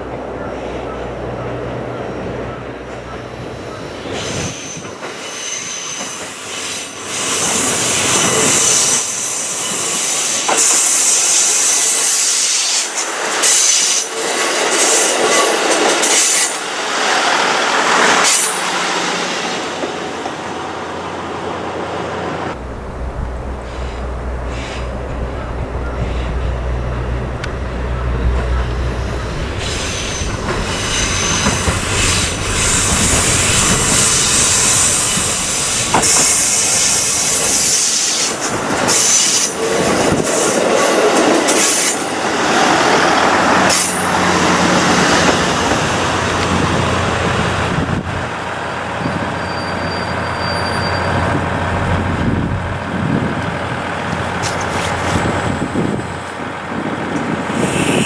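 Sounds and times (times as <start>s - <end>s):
train wheels on track: 0.0s - 58.0s
high-pitched wheel squeal: 28.0s - 38.2s, 49.0s - 51.4s, 57.5s - 58.0s.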